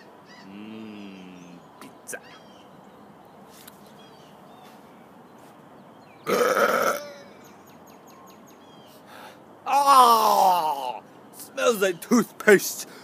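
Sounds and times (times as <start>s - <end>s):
man burping: 6.2s - 7.3s.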